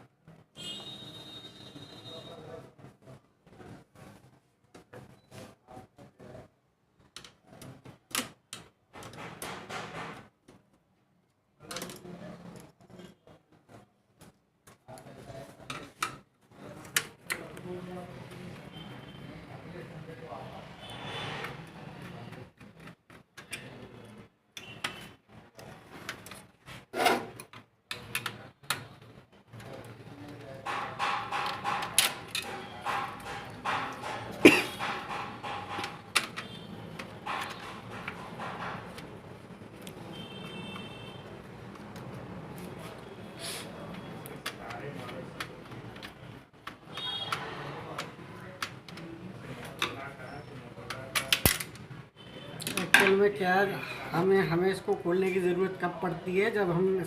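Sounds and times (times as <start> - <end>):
printer parts clicking and rattling: 7.0 - 10.8, 11.6 - 12.8, 27.3 - 43.0, 43.9 - 51.9, 52.6 - 53.4.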